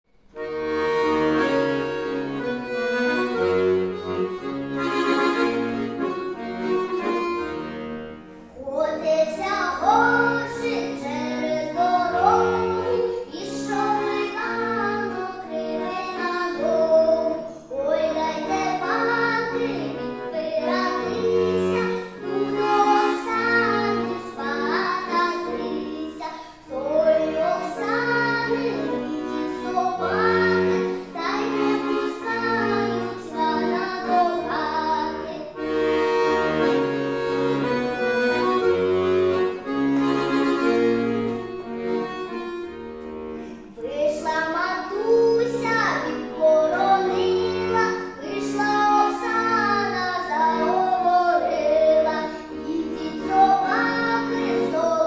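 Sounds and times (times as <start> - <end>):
accordion chords: 0.1 - 55.0
child singing: 8.5 - 35.8, 43.7 - 55.0.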